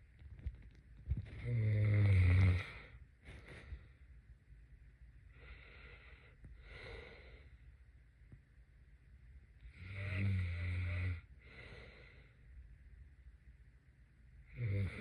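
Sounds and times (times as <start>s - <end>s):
breathy breaths: 1.2s - 4.1s, 5.3s - 7.7s, 9.9s - 12.5s
person snoring: 1.3s - 2.9s, 9.7s - 11.3s, 14.5s - 15.0s.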